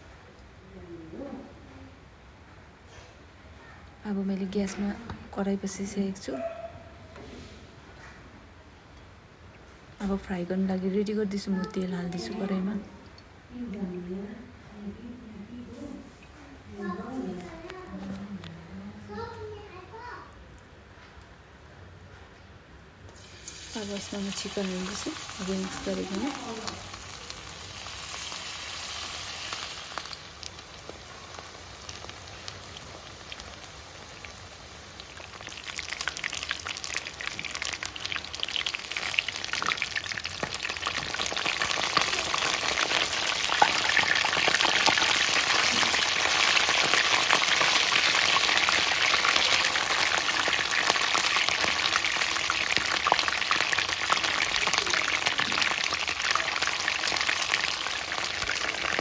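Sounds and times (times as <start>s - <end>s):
chicken deep-frying in oil: 23.1s - 59.0s.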